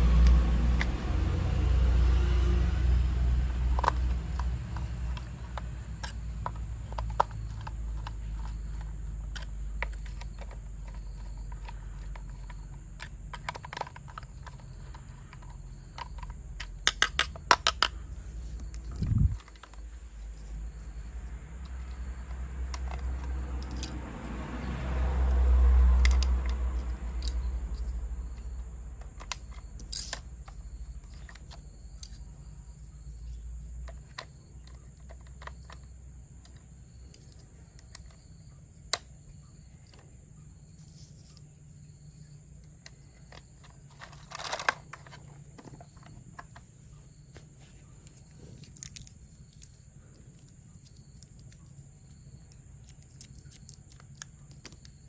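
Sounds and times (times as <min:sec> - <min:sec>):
hands handling plastic parts: 0:03.7 - 0:24.0, 0:26.0 - 0:32.2, 0:42.6 - 0:46.7, 0:47.3 - 0:55.0.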